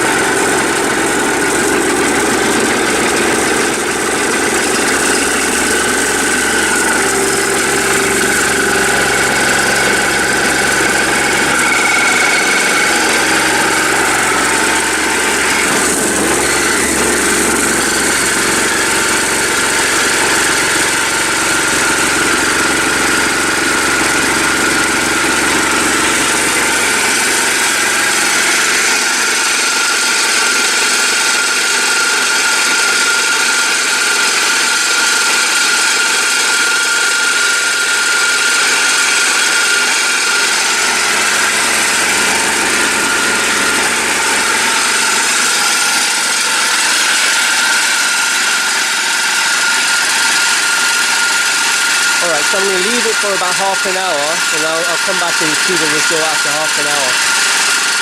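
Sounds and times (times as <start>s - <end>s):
vibrating tumbler rattling: 0.1s - 28.4s.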